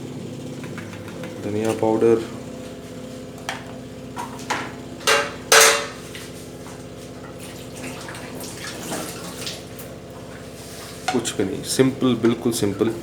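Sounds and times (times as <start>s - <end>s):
faint clatter: 0.6s - 1.8s.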